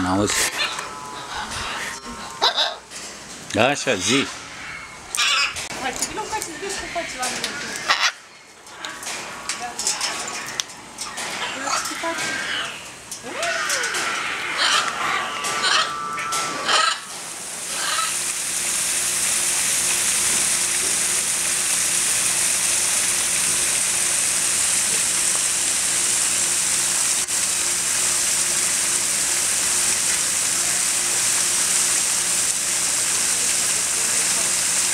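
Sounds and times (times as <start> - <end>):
loud hiss of water: 16.4 - 34.9.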